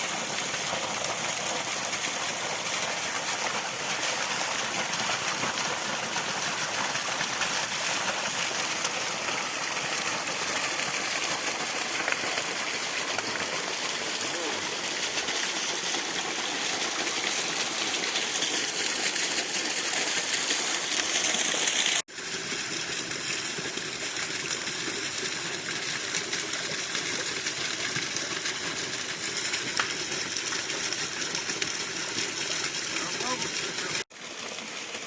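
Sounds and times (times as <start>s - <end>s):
waterfall rushing and splashing: 0.0s - 22.1s, 30.7s - 35.0s.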